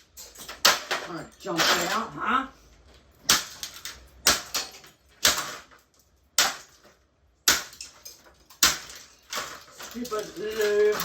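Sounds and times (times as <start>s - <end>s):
fan being smashed: 0.0s - 2.4s, 3.1s - 11.0s
small clatters: 7.8s - 11.0s.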